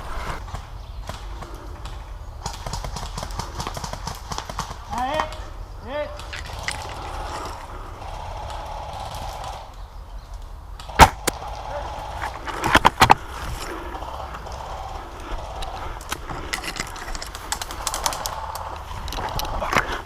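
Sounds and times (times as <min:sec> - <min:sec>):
airsoft rifle shot: 0:10.9 - 0:11.7.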